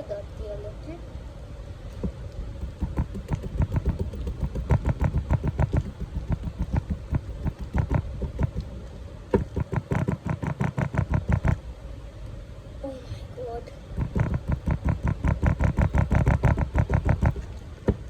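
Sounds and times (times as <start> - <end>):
digging tool chipping at clay: 2.0 - 11.6, 14.0 - 18.0.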